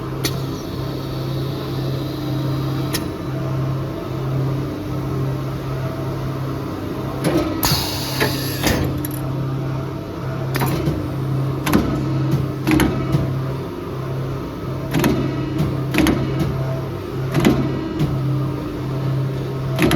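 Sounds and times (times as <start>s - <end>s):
low machine hum: 0.0s - 19.9s
mechanical clunks and clicks: 10.5s - 13.4s, 14.9s - 16.6s, 17.3s - 18.3s.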